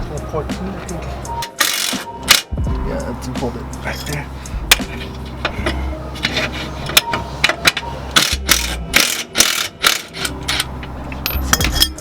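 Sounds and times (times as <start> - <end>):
socket ratchet clicking: 1.4 - 2.5, 8.2 - 10.7
metal clinks: 10.2 - 12.0.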